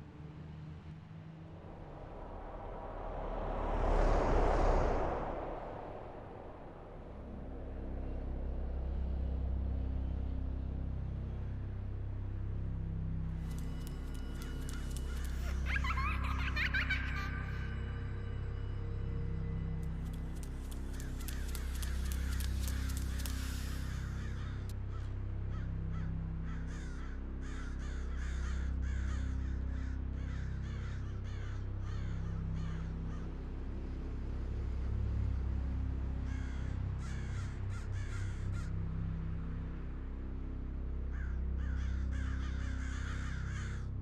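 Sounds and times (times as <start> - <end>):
low droning bed: 0.0 - 44.0
crows cawing: 13.5 - 17.3, 20.7 - 33.2, 36.2 - 38.8, 41.1 - 43.9.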